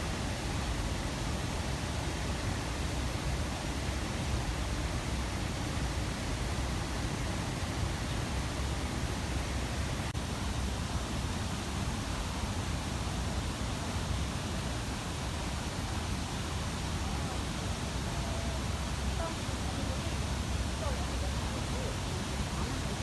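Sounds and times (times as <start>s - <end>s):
waterfall rushing: 11.6s - 23.0s.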